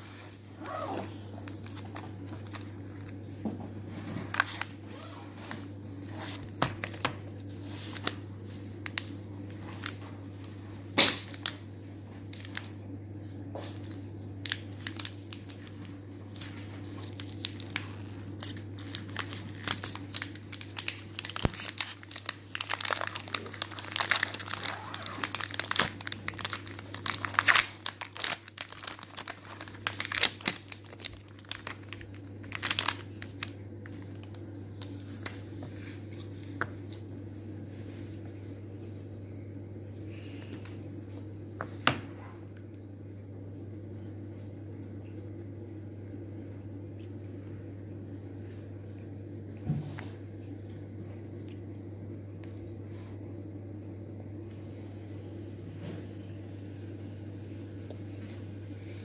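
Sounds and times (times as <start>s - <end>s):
steady low hum: 0.0s - 59.0s
packaging crinkling and tearing: 0.2s - 3.3s, 4.2s - 37.0s.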